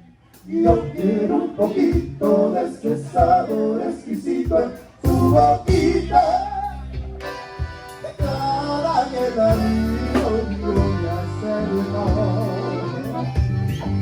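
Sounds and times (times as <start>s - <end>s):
regular drum hits: 0.7s - 1.0s, 4.4s - 6.1s, 7.0s - 8.7s, 9.5s - 11.2s
live band playing instrumental: 4.4s - 14.0s.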